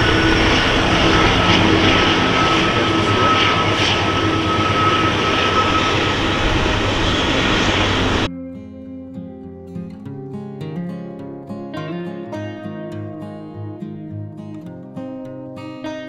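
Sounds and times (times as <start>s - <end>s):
thin high tone: 0.0s - 8.3s
train rumbling past: 0.0s - 8.3s.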